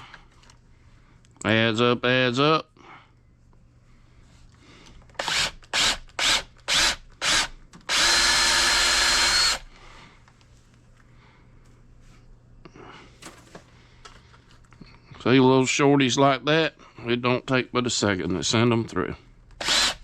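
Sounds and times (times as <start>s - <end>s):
wire stripper motor whining: 5.2s - 9.7s.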